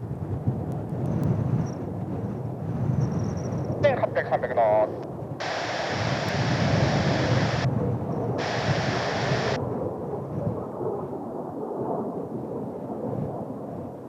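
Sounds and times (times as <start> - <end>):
wind: 0.0 - 14.0
jet engines rumbling: 3.4 - 13.7
hiss switching on and off: 5.4 - 7.7, 8.4 - 9.6.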